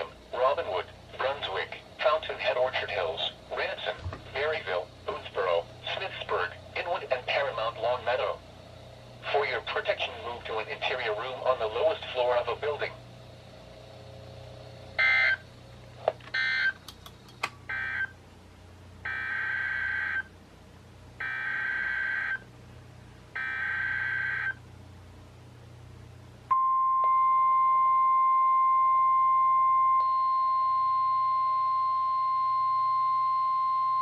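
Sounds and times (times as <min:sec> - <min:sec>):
steady alarm tone: 0:15.0 - 0:15.4, 0:16.4 - 0:16.8, 0:17.7 - 0:18.2, 0:19.0 - 0:20.3, 0:21.2 - 0:22.4, 0:23.4 - 0:24.6
sharp clicks: 0:16.8 - 0:17.6.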